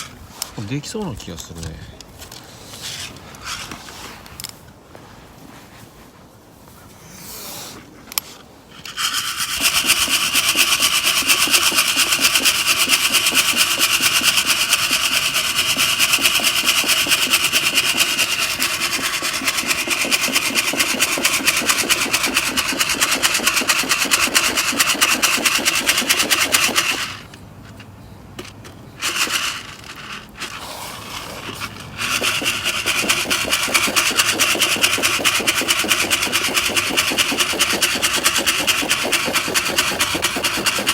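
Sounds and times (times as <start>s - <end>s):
coffee beans rattling in metal cup: 8.8s - 27.3s, 29.0s - 30.6s, 31.2s - 40.9s.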